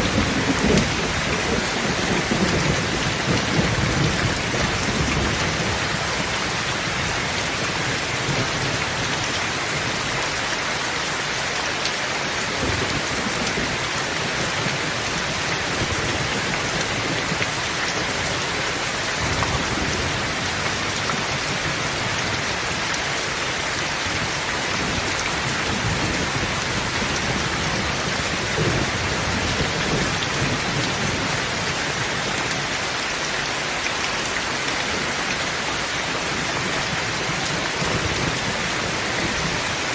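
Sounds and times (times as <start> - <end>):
thunder rumbling: 0.0 - 9.1, 24.2 - 32.1
heavy rain falling: 0.0 - 39.9.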